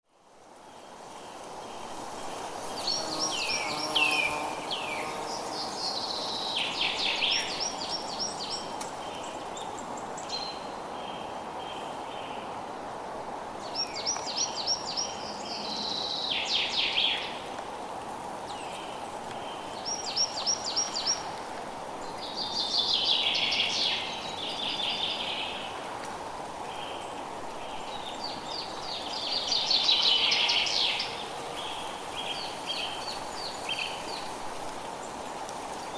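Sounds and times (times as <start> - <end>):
steady background hiss: 0.1 - 35.9
songbird singing: 2.7 - 12.5, 13.6 - 17.5, 18.5 - 21.4, 22.0 - 25.8, 26.6 - 34.4.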